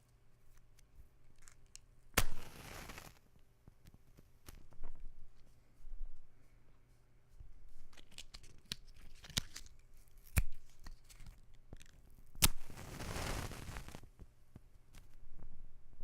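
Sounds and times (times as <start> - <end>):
match striking box: 1.4 - 3.2, 8.0 - 14.0
match head flaring hiss: 2.2 - 3.2, 12.4 - 14.0
matches scraping and clicking: 7.9 - 12.8.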